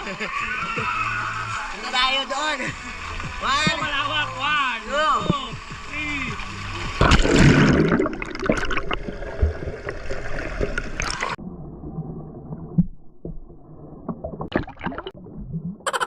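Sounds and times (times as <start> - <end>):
water splashing and sloshing: 0.2 - 16.0
underwater gurgling bubbles: 6.4 - 15.9.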